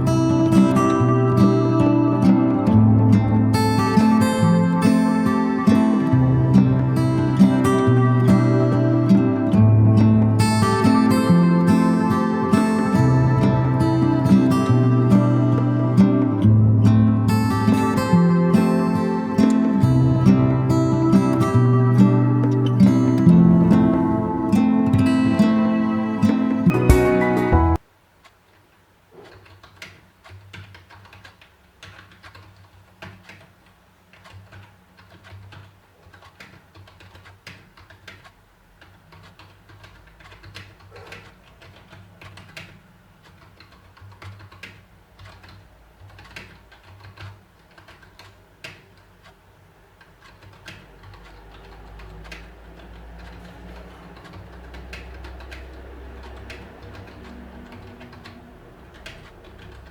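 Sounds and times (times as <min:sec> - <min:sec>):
keyboard key clicks: 0:29.1 - 0:59.9.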